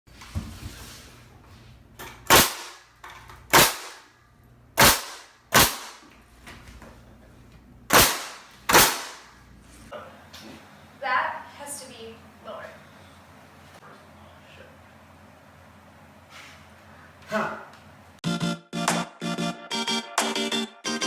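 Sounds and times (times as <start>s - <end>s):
nail gun firing: 2.3s - 2.8s, 3.5s - 4.1s, 4.8s - 6.0s, 7.9s - 9.3s.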